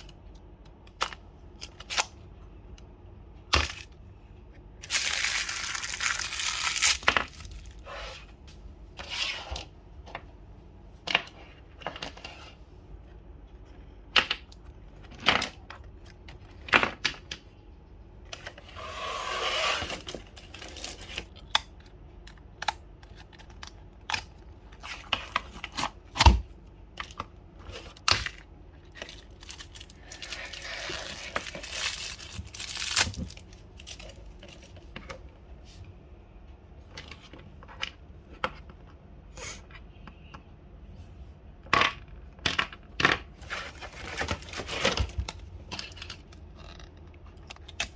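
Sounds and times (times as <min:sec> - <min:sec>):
packaging tearing and crinkling: 0:04.8 - 0:07.8, 0:19.8 - 0:21.4, 0:28.0 - 0:34.5, 0:43.7 - 0:45.4.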